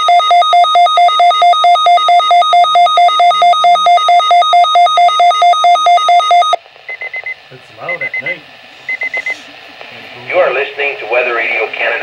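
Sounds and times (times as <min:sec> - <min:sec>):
weather radio warbling alarm: 0:07.8 - 0:12.0.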